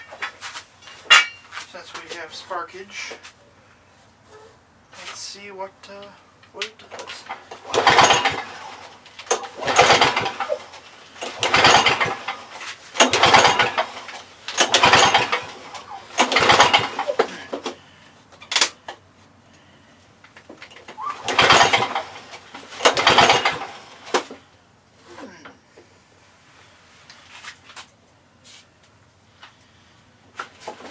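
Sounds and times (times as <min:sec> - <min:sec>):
engine cranking: 0:06.9 - 0:17.8, 0:20.7 - 0:24.4
mower recoil starter pulls: 0:06.9 - 0:17.8, 0:20.7 - 0:24.4.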